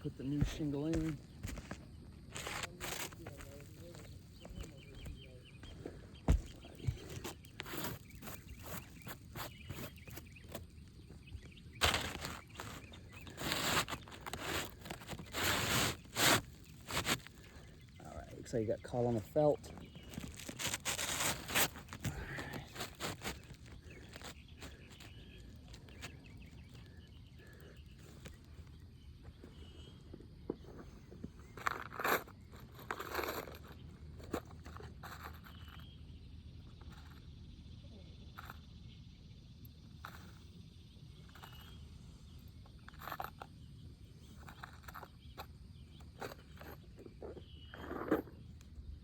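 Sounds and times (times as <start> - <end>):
faint bird chirps: 0.0 - 31.6, 32.4 - 49.0
shingles scraping on roof: 0.4 - 10.6, 11.8 - 17.9, 19.3 - 25.1.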